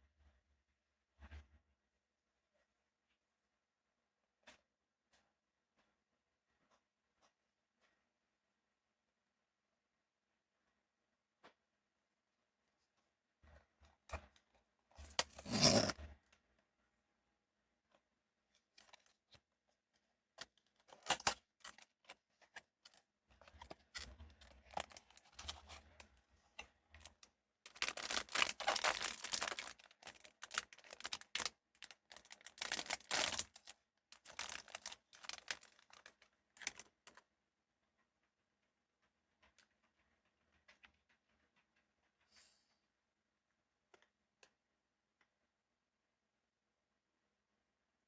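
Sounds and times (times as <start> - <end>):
cardboard and plastic rustling: 15.0 - 15.9, 20.4 - 26.2, 27.0 - 37.2.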